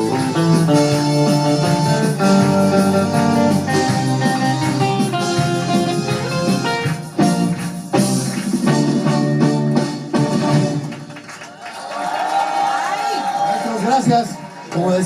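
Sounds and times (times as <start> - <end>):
instrumental guitar band music: 0.0 - 11.2.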